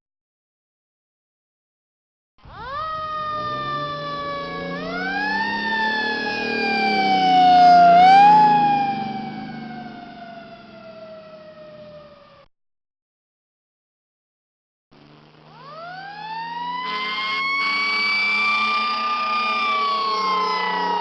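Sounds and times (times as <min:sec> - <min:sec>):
fire truck siren wailing: 0:02.4 - 0:12.5, 0:15.5 - 0:21.0.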